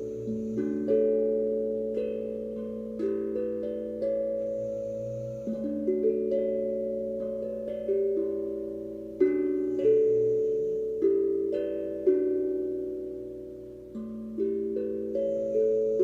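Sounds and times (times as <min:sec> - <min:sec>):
steel tongue drum melody: 0:00.0 - 0:16.0
dog snoring faintly: 0:04.1 - 0:06.7.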